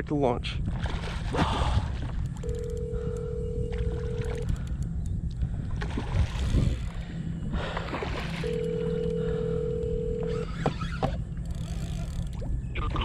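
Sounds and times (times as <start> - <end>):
wind rumble on microphone: 0.0 - 13.0
phone ringback tone: 2.4 - 4.5, 8.4 - 10.6.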